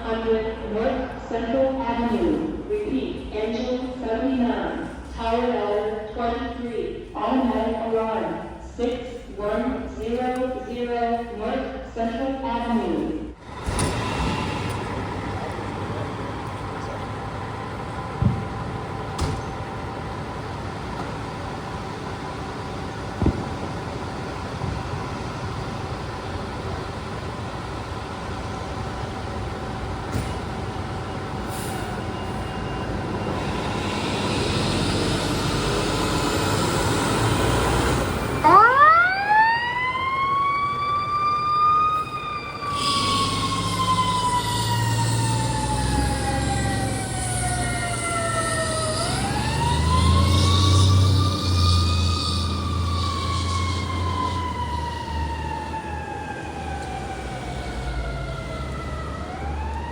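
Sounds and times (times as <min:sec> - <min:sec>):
truck engine rumbling: 0:12.7 - 0:59.9
fire truck siren wailing: 0:13.9 - 0:59.9.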